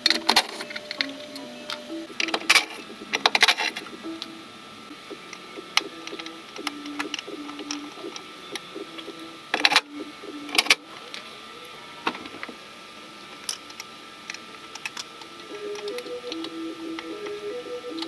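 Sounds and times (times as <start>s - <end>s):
soft background melody: 0.0s - 10.8s, 15.5s - 18.0s.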